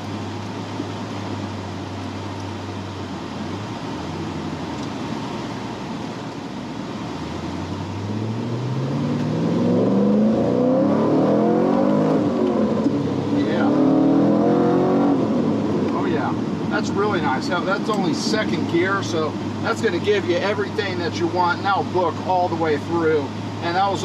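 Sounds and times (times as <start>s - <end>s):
car engine revving: 0.0s - 24.0s.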